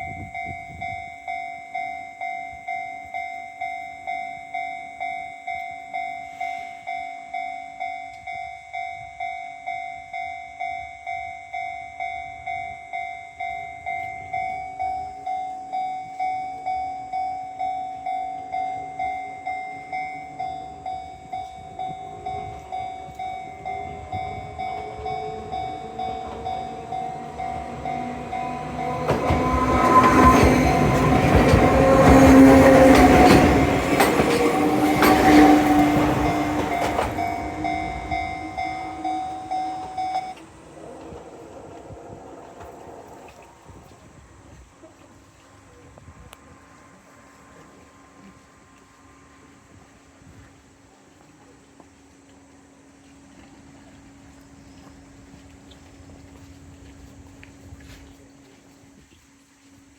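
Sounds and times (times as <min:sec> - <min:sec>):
level crossing warning bell: 0:00.0 - 0:43.1
train wheels rattling and squealing: 0:18.2 - 0:44.2.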